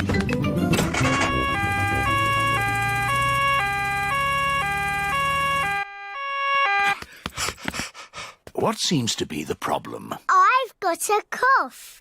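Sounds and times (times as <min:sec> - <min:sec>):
two-tone cartoon siren: 0:00.8 - 0:07.0.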